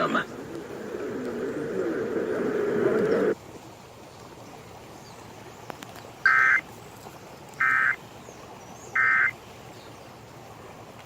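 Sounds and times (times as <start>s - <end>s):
faint hiss: 0.0s - 11.0s
buzzy digital data tones: 6.3s - 6.6s.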